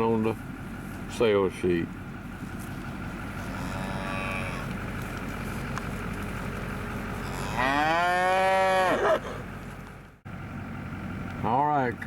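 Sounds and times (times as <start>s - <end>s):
cattle mooing: 3.3s - 5.0s, 7.1s - 9.5s.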